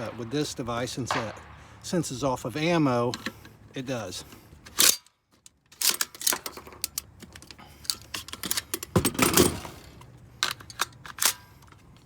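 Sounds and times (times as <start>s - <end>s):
rifle metallic clicks and clacks: 4.3s - 12.0s.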